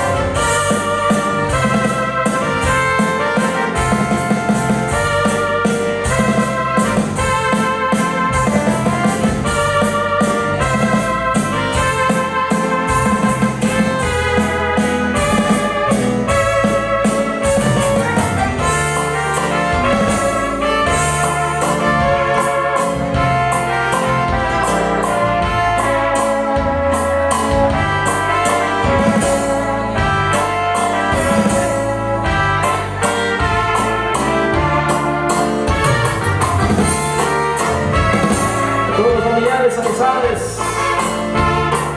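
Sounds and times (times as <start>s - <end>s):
music with brass melody: 0.0s - 41.9s.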